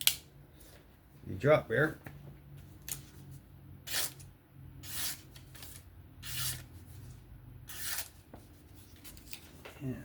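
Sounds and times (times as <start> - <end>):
knife blade scraping: 3.9 - 5.3, 6.2 - 6.7, 7.7 - 8.2.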